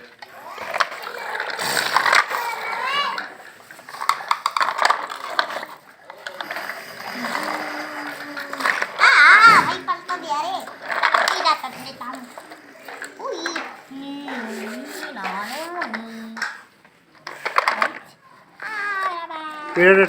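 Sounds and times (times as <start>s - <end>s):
children talking and calling out: 0.0s - 16.7s, 17.3s - 20.0s
small handling clicks and knocks: 14.6s - 19.7s.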